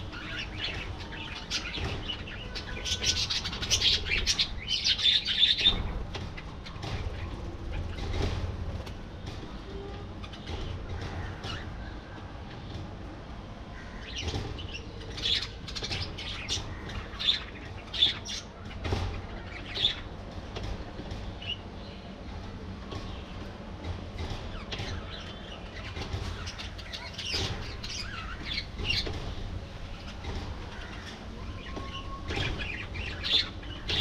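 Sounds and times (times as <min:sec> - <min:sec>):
budgerigars chirping and chattering: 0:00.0 - 0:07.3, 0:13.8 - 0:20.1, 0:24.5 - 0:29.3, 0:30.0 - 0:34.0.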